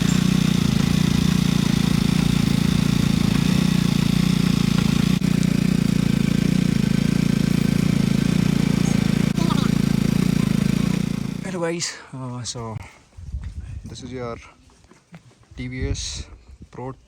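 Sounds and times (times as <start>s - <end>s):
motorcycle engine idling: 0.0s - 11.8s.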